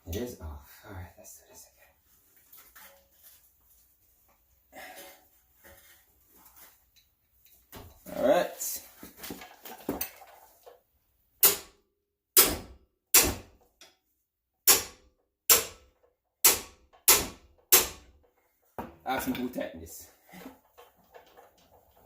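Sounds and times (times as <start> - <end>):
sharp metal knocks: 11.4 - 11.8, 12.4 - 13.6, 14.6 - 18.2.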